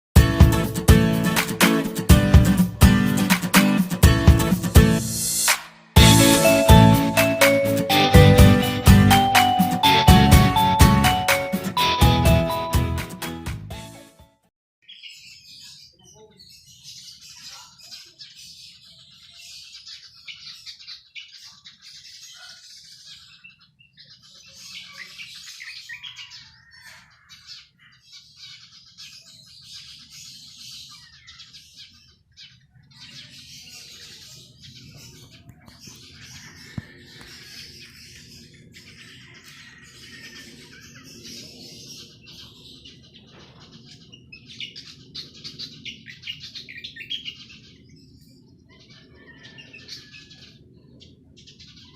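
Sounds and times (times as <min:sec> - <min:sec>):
small birds chirping: 0:14.8 - 0:51.9.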